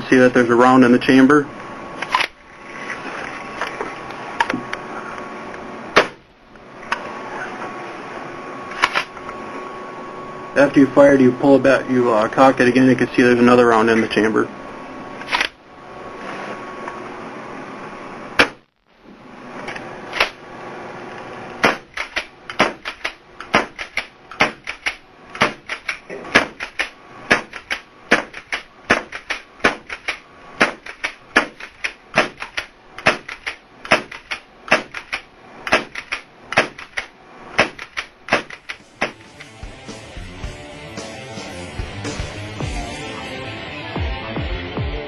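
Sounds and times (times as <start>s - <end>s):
sharp clicks and pops: 21.6s - 39.5s
paintball gun shot: 33.0s - 35.0s, 35.7s - 36.0s, 37.6s - 39.2s.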